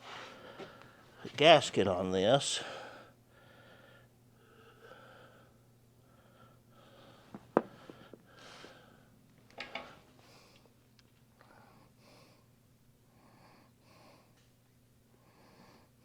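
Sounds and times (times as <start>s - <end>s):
person breathing: 0.0s - 1.3s, 2.6s - 9.1s, 11.4s - 14.4s, 15.1s - 16.0s.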